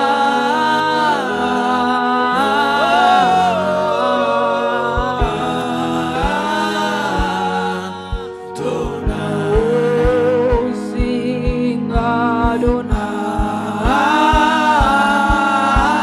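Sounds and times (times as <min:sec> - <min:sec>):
voices singing slow melody: 0:00.0 - 0:16.0
low drum beats: 0:04.9 - 0:16.0.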